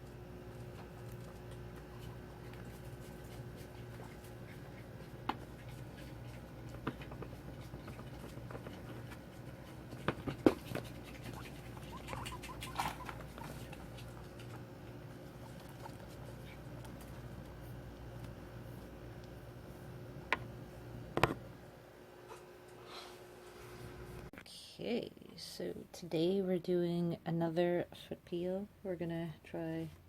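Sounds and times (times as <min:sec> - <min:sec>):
steady low hum: 0:00.0 - 0:30.0
guinea pig squeak: 0:10.7 - 0:14.6, 0:15.3 - 0:17.1.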